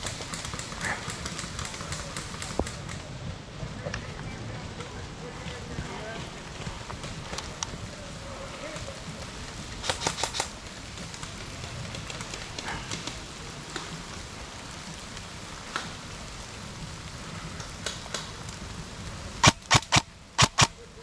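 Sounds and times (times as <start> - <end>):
rain pattering: 0.0 - 21.0
sharp clicks: 9.8 - 10.5, 19.4 - 20.8.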